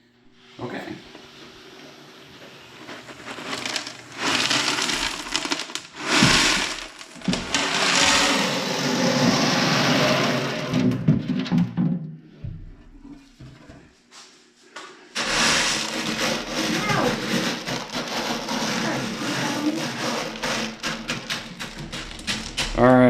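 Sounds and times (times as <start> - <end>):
clay pebbles pouring into glass tank: 1.7 - 11.2, 15.2 - 23.0.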